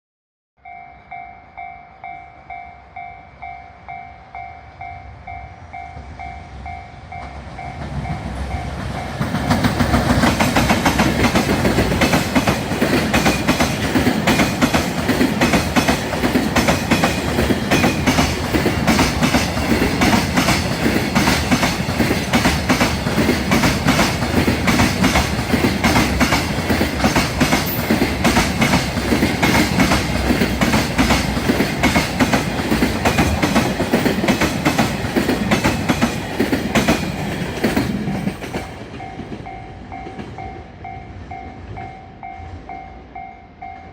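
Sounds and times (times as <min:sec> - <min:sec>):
level-crossing warning bell: 0:00.6 - 0:09.8, 0:36.7 - 0:43.9
freight train passing: 0:00.6 - 0:43.9.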